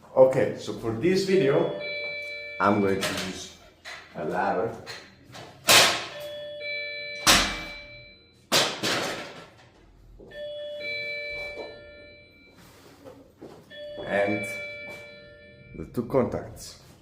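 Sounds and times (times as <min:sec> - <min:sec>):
bell-like ringing tones: 0:01.2 - 0:03.6, 0:06.1 - 0:08.4, 0:10.2 - 0:13.1, 0:13.7 - 0:16.2.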